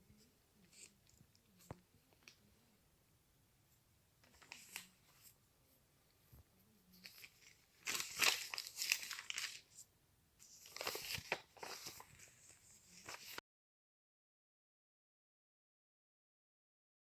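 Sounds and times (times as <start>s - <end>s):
crinkling and rustling: 4.2s - 5.4s, 6.2s - 9.8s, 10.4s - 13.4s.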